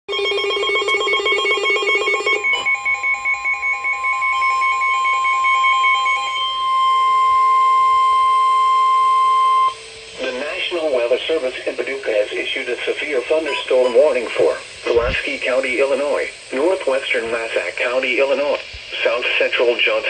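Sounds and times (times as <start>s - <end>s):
steady warning alarm tone: 0.1s - 14.7s
pulsing warbling alert tone: 13.5s - 14.2s.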